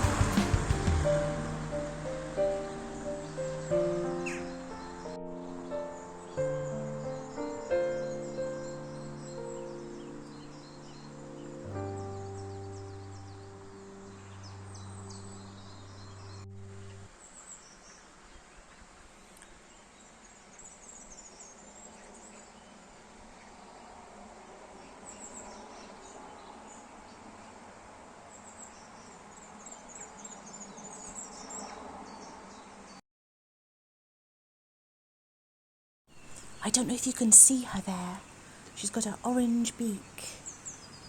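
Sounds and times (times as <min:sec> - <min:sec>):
background music: 0:00.0 - 0:17.1
steady outdoor hiss: 0:00.0 - 0:33.0, 0:36.1 - 0:41.0.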